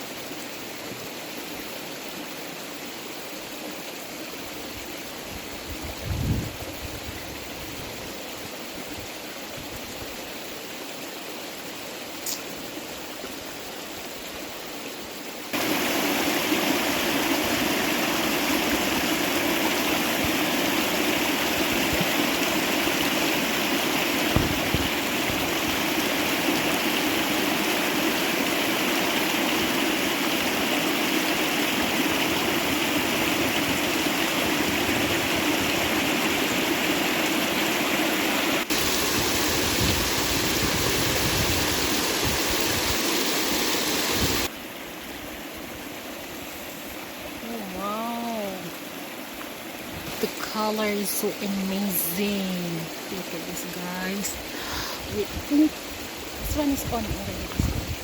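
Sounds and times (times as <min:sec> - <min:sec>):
rushing stream water: 0:00.0 - 0:58.0.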